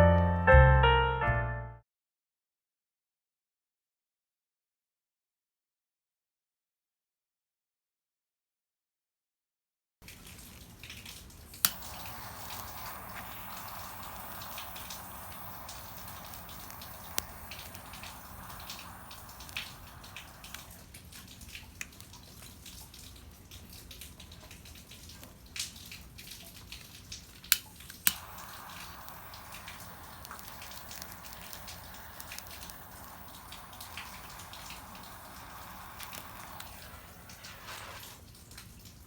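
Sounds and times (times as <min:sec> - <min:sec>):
rainwater dripping: 0:10.0 - 0:39.0
sharp clicks: 0:11.6 - 0:20.8, 0:27.5 - 0:37.4
steady hiss: 0:11.6 - 0:21.1, 0:27.4 - 0:38.4.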